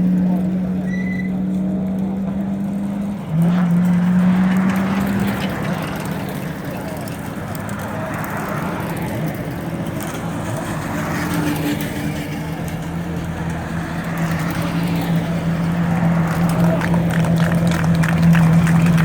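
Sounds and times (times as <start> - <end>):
race car engine at low revs: 0.0 - 19.0.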